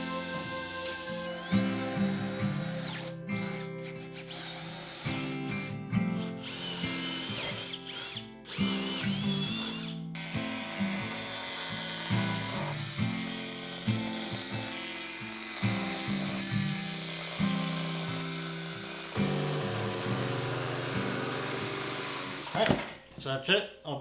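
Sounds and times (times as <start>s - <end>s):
background music: 0.0s - 7.8s
power drill whining: 0.0s - 23.0s.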